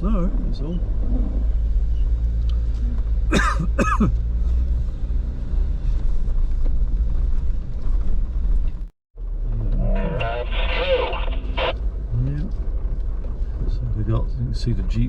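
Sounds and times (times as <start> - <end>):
vehicle rumbling on a trail: 0.0 - 15.0
person coughing: 3.3 - 4.1.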